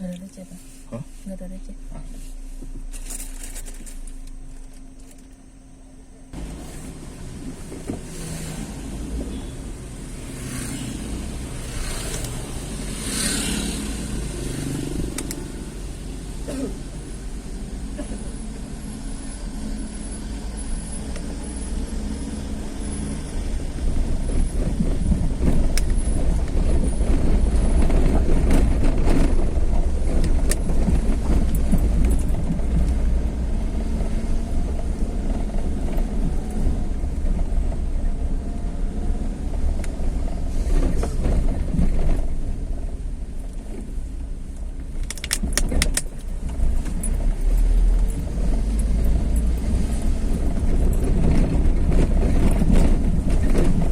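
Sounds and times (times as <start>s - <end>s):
vehicle engine and tyre rumble: 0.0s - 53.9s
sharp clicks: 45.0s - 46.2s.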